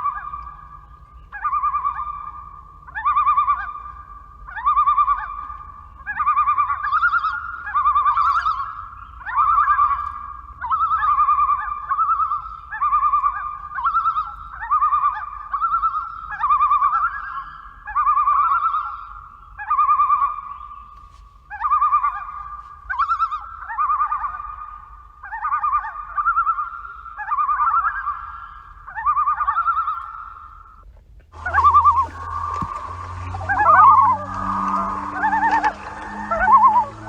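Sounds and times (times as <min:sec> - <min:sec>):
loons tremolo calls: 0:00.0 - 0:37.0.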